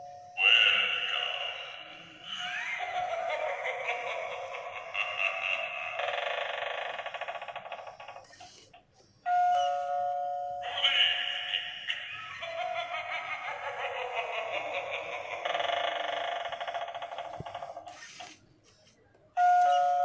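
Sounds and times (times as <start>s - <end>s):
tinny doorbell recorded sounds: 9.3s - 10.7s, 19.4s - 20.0s.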